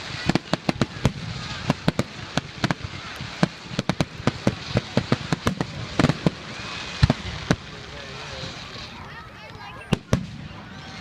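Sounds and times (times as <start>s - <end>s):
fireworks bursting: 0.0s - 11.0s
heavy fireworks booms: 0.0s - 11.0s.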